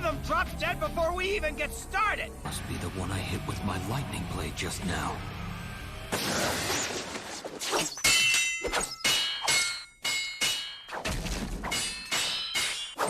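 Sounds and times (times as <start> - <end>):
metal blades clashing: 7.8 - 13.0.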